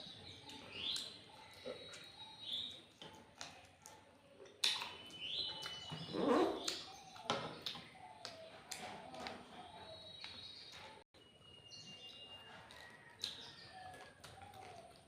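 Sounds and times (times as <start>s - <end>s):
chewing and wet mouth smacks: 0.4s - 6.0s, 12.4s - 15.0s.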